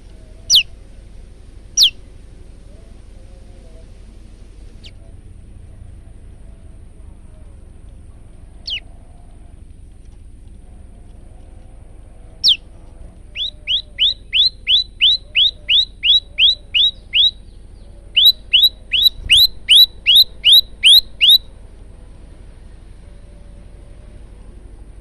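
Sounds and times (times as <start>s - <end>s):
bird chirping: 0.0s - 0.8s, 1.7s - 2.1s, 8.5s - 8.9s, 12.4s - 21.5s.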